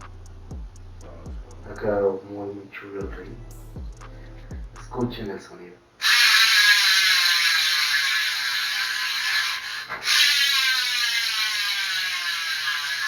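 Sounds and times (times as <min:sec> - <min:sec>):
bicycle hub ratchet clicking: 0:06.0 - 0:13.0.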